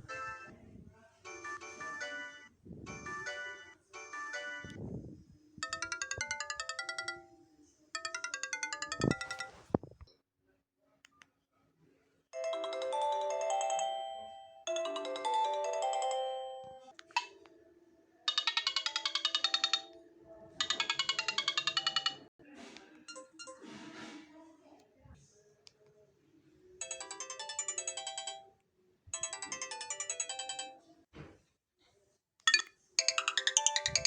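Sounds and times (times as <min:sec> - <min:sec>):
mobile phone ringtone melody: 0:00.0 - 0:00.5, 0:01.3 - 0:04.8, 0:05.6 - 0:07.3, 0:08.0 - 0:09.8, 0:12.4 - 0:16.9, 0:18.3 - 0:20.0, 0:20.6 - 0:22.3, 0:26.8 - 0:28.5, 0:29.2 - 0:30.8, 0:32.5 - 0:34.0.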